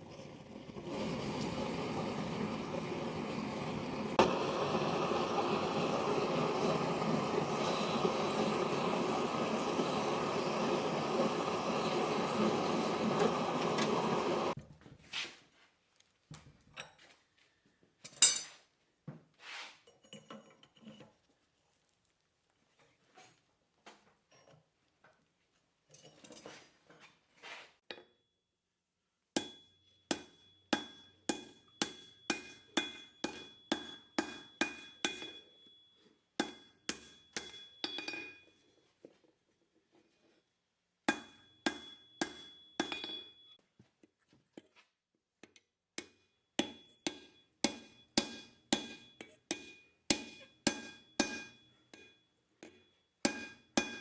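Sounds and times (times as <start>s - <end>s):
hammer striking steel on anvil: 29.4s - 35.8s, 36.4s - 38.4s, 41.1s - 43.4s, 46.0s - 54.0s.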